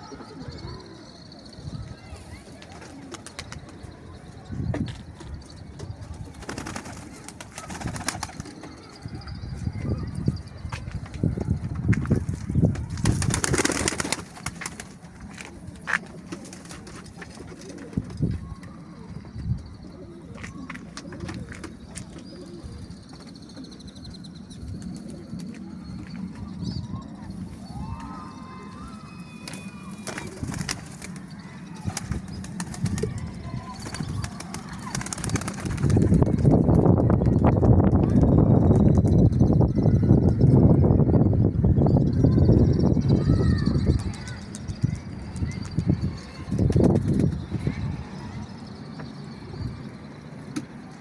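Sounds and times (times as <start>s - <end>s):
pigeons cooing: 0.0s - 4.1s, 16.0s - 23.8s
pigeon wings flapping: 6.2s - 8.9s, 12.1s - 18.2s, 29.4s - 36.5s
sharp wing claps: 33.8s - 36.2s.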